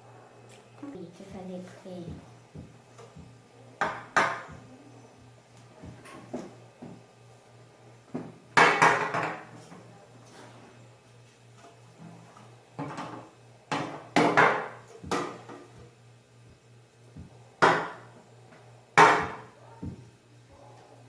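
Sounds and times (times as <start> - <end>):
baking pan knocking on countertop: 3.8 - 4.6, 8.2 - 9.4, 13.7 - 15.6, 17.6 - 18.0, 19.0 - 20.0.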